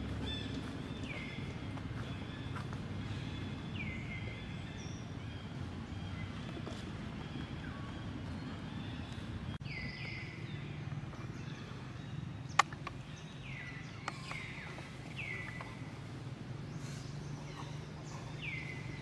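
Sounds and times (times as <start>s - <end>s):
steady low rumble: 0.0s - 19.0s
sharp click: 12.5s - 13.0s.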